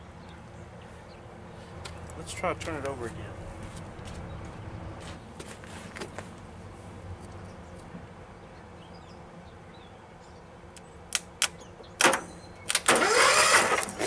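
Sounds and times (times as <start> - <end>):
sharp clicks: 10.8 - 14.0
starter cranking engine whir: 12.7 - 14.0.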